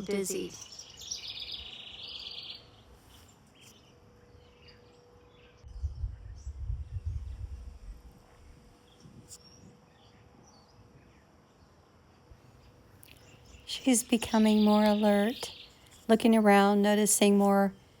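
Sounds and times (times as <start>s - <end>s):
bird chirps: 0.0s - 6.5s, 13.0s - 16.5s
low rumble: 5.6s - 8.6s.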